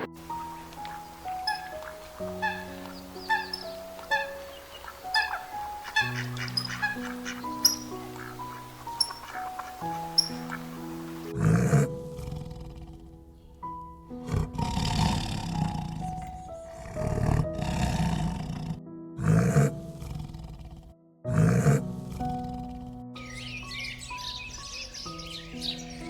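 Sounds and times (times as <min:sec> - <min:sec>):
background music: 0:00.0 - 0:26.0
large animal roaring: 0:11.3 - 0:13.4, 0:14.2 - 0:23.0.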